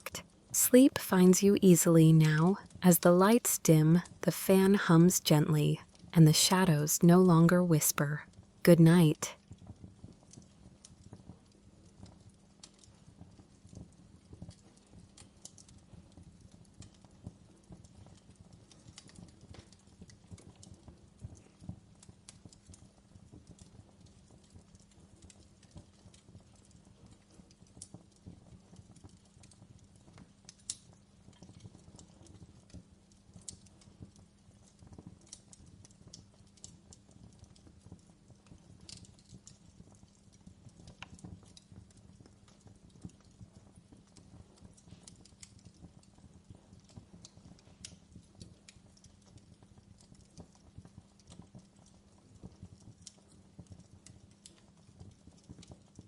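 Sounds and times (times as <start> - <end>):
low steady hum: 0.0 - 9.3
fireplace crackling: 0.0 - 9.4, 33.4 - 53.4.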